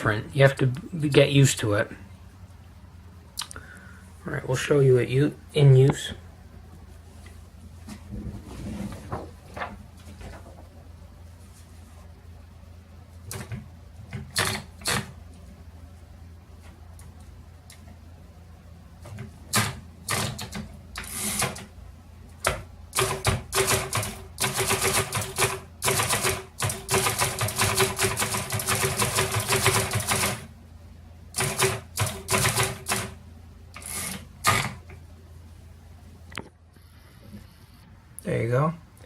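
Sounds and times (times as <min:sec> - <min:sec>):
typewriter typing: 0:14.2 - 0:15.1, 0:19.5 - 0:21.7, 0:22.4 - 0:30.5, 0:31.4 - 0:33.2, 0:33.8 - 0:34.8.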